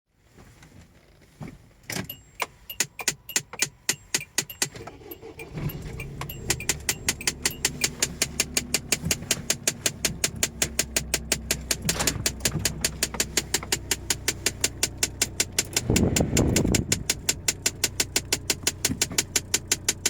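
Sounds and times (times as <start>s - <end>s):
rapid clicking behind dashboard: 2.1s - 20.0s
low blower hum: 4.8s - 20.0s.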